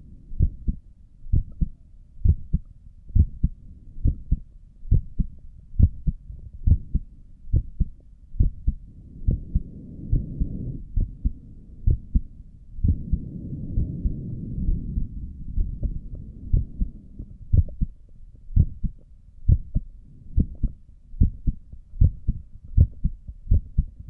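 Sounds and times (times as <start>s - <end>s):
heartbeat through stethoscope: 0.4s - 24.0s.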